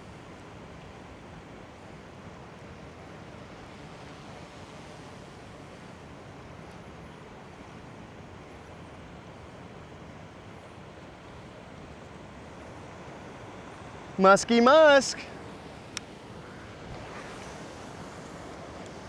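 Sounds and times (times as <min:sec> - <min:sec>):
river water flowing: 0:12.4 - 0:19.0.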